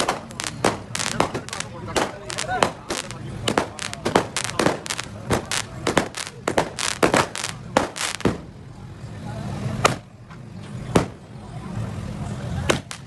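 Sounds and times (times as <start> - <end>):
sharp cracks: 0.0 - 8.5, 9.8 - 10.1, 10.9 - 11.2, 12.7 - 13.0.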